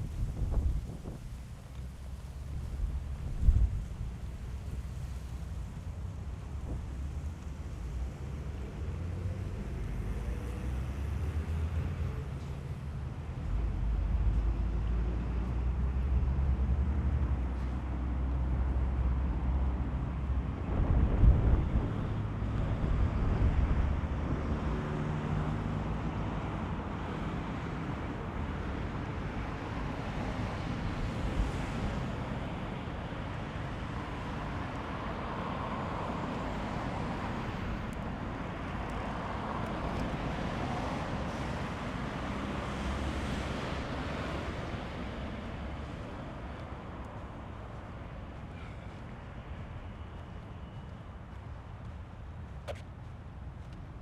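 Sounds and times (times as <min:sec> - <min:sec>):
wind buffeting microphone: 0:00.0 - 0:08.3, 0:20.2 - 0:25.5.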